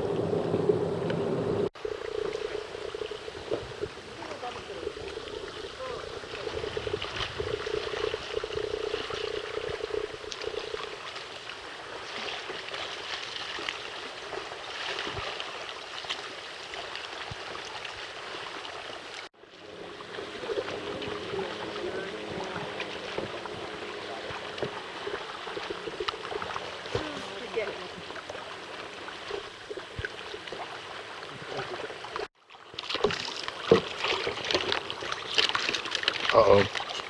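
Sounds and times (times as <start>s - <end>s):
water splashing around kayak: 0.0s - 37.0s.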